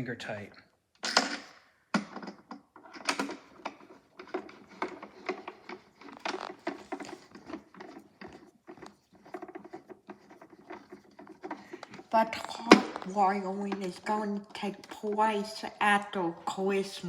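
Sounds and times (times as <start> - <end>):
plastic parts rattling: 1.0 - 16.0.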